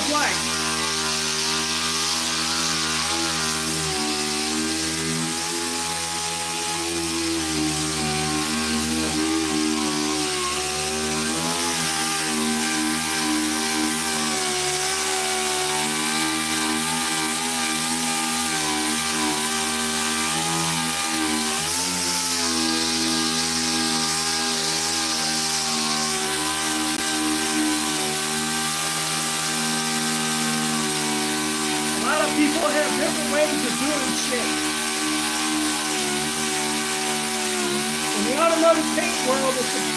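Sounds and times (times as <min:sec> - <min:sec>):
sander running: 0:00.0 - 0:39.9.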